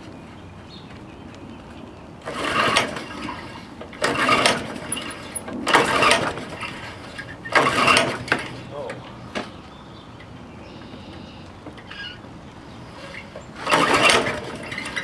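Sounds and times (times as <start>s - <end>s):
engine turning over: 2.2s - 9.6s, 12.9s - 15.0s
lawnmower recoil starter pulls: 2.2s - 9.6s, 12.9s - 15.0s.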